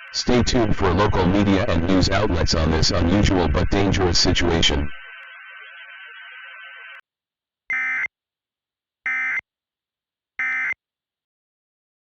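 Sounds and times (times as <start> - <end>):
harsh digital data bursts: 0.0 - 7.0.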